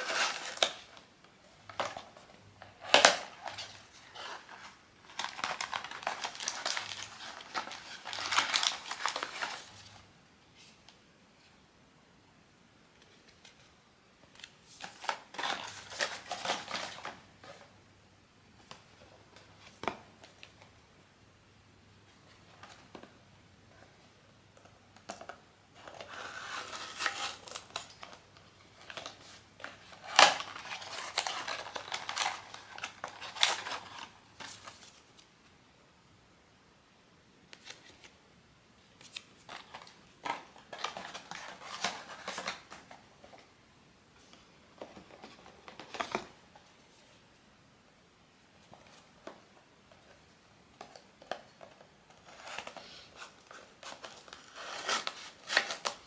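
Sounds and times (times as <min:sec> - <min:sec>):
wrapping crinkling: 0:00.0 - 0:01.0, 0:01.6 - 0:10.0, 0:14.4 - 0:17.6, 0:25.8 - 0:35.2, 0:39.0 - 0:43.5, 0:50.8 - 0:56.0.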